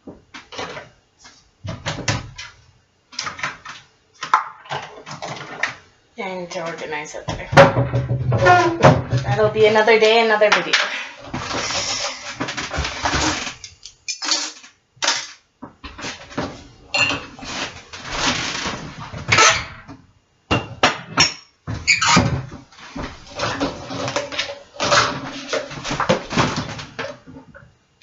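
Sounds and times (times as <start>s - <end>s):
cupboard doors opening and closing: 1.6s - 2.6s, 6.6s - 9.8s, 11.2s - 13.7s, 15.1s - 27.6s
dishes clattering: 16.0s - 17.4s, 20.5s - 21.5s.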